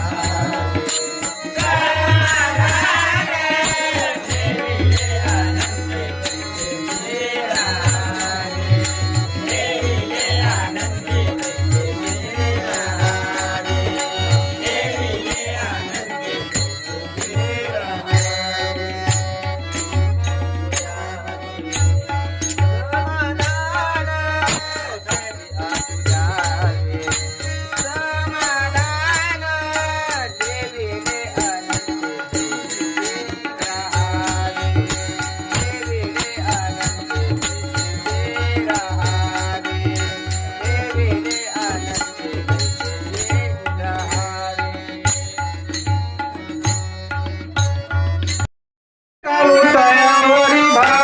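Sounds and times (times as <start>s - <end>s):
person singing melody: 49.2s - 51.0s.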